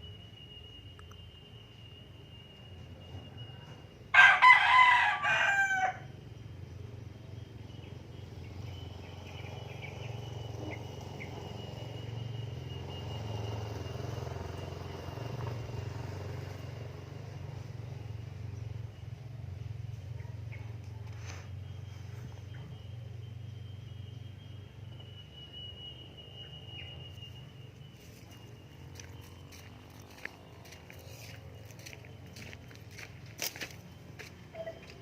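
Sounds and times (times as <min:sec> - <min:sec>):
rooster crowing: 0:03.7 - 0:06.2.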